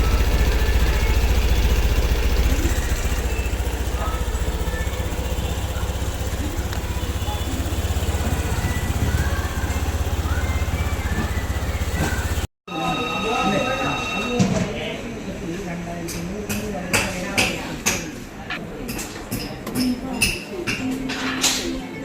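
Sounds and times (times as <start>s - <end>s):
scooter engine idling: 0.0s - 12.5s.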